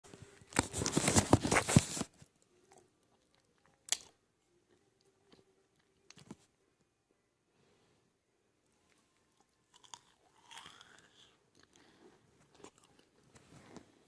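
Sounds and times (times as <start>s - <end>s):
chewing cornstarch crunching: 9.4s - 13.3s.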